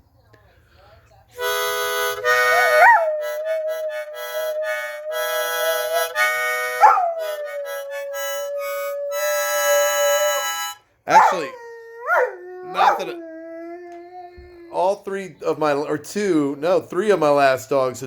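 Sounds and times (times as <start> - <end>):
harmonica chords: 1.4 - 11.5, 14.7 - 17.9
dog howling: 2.1 - 14.9.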